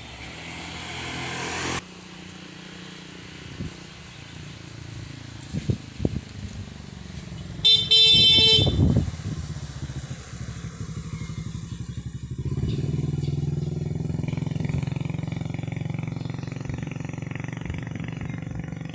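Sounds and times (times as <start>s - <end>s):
small motor vehicle engine running: 0.0s - 18.9s
vehicle horn honking: 7.6s - 9.2s.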